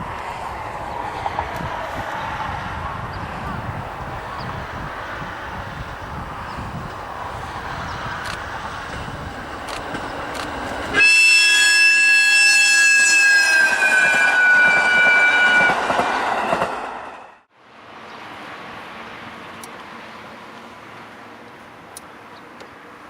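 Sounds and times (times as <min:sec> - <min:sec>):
train rumble: 0:00.0 - 0:23.0
train horn blast: 0:10.9 - 0:15.8.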